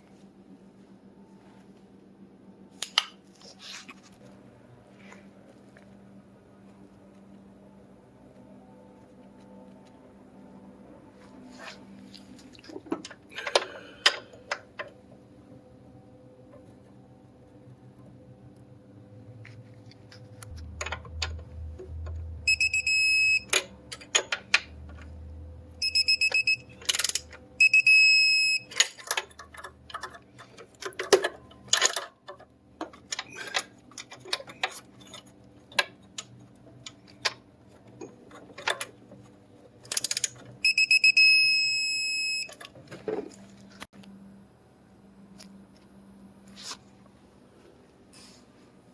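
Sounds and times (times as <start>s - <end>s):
sharp clicks and knocks: 20.4s - 22.3s
high electronic beeping tone: 22.3s - 23.6s, 25.8s - 26.8s, 27.6s - 28.6s.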